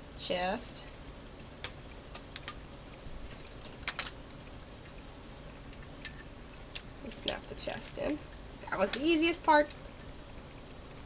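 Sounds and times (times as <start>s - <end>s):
plastic parts clicking and tapping: 3.3s - 4.2s.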